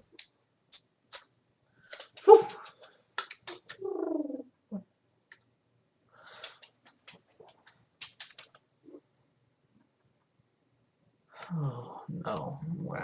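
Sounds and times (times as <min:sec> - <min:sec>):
small objects clicking and tapping: 0:06.3 - 0:08.6.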